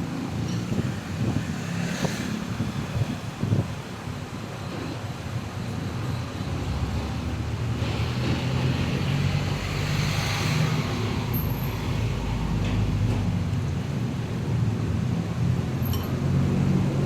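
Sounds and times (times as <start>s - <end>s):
traffic engine hum: 0.0s - 17.0s
vehicle passing by: 6.8s - 12.6s.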